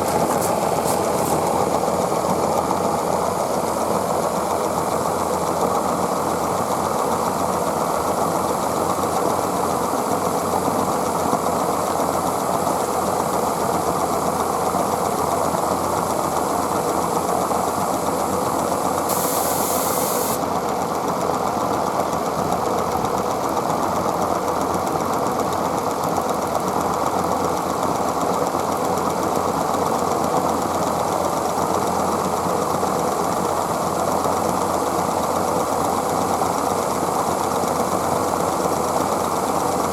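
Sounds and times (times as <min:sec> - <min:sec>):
steam hiss: 0:00.0 - 0:02.1, 0:17.4 - 0:20.5
model steam locomotive clatter: 0:00.0 - 0:39.9.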